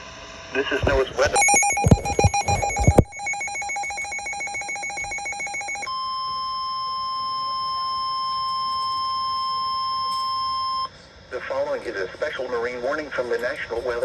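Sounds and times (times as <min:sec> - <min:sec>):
steady warning alarm tone: 0:01.3 - 0:10.9
trilling two-pitch beep: 0:01.3 - 0:10.9.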